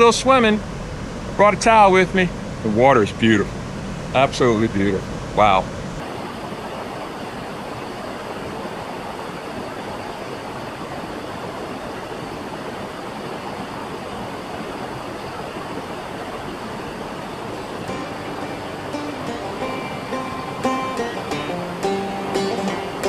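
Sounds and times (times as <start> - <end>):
waterfall rushing: 0.0 - 7.3, 15.8 - 23.0.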